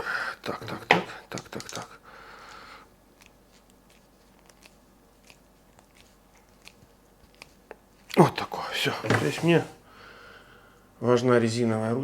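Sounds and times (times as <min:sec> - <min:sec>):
scratchy rub: 0:08.8 - 0:09.8.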